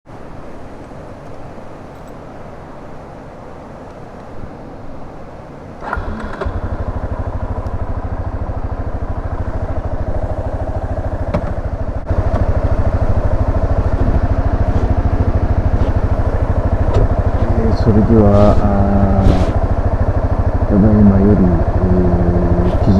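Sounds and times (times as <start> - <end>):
motorcycle engine idling: 5.8 - 22.9.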